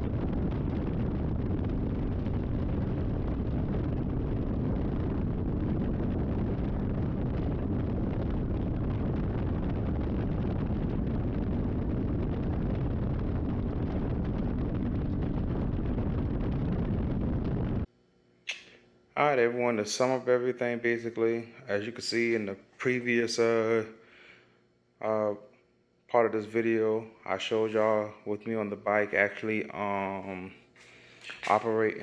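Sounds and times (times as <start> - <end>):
wind buffeting the microphone: 0.0 - 17.9.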